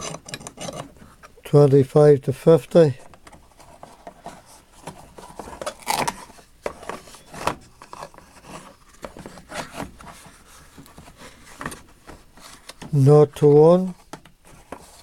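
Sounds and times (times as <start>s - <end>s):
tools clicking and scraping in drawer: 0.0s - 1.0s.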